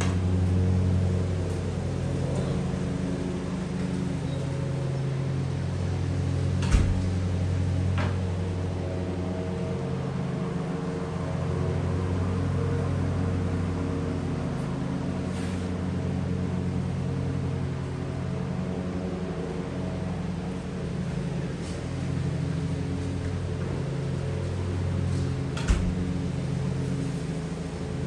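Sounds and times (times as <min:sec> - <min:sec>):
machine humming: 0:00.0 - 0:28.0.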